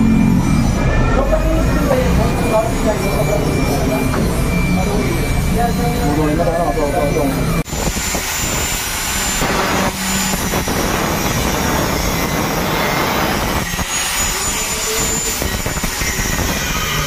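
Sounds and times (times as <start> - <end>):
angle grinder cutting metal: 0.0 - 17.0.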